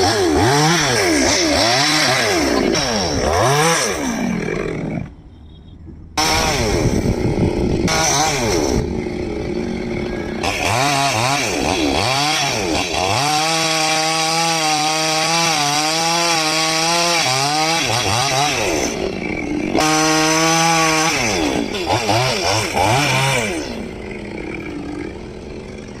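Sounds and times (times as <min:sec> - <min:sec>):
chainsaw cutting wood: 0:00.0 - 0:05.1, 0:06.2 - 0:26.0.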